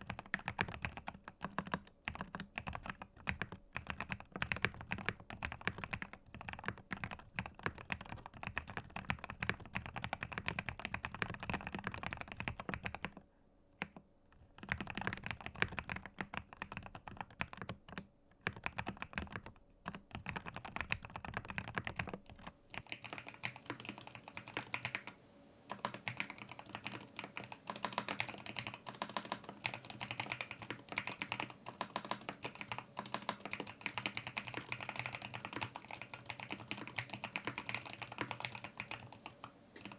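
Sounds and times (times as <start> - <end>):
mechanical keyboard typing: 0.0 - 13.2, 14.6 - 39.9.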